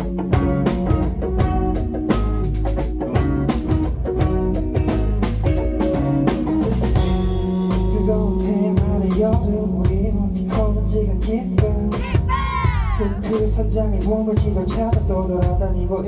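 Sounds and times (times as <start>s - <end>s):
deep bass line: 0.0s - 16.0s
drum kit beat: 0.0s - 16.0s
plucked guitar: 0.0s - 16.0s.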